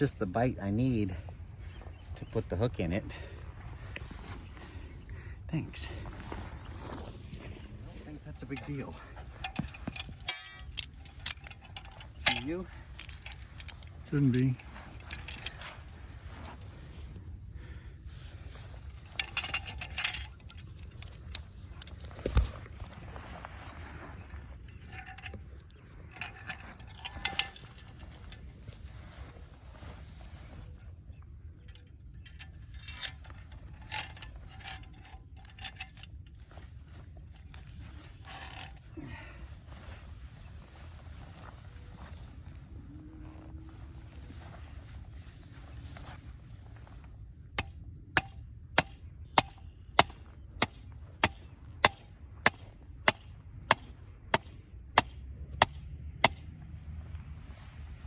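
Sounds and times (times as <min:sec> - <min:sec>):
metallic clicks of rigging hardware: 0:08.4 - 0:17.0, 0:18.5 - 0:23.0, 0:24.6 - 0:28.9, 0:31.6 - 0:38.9.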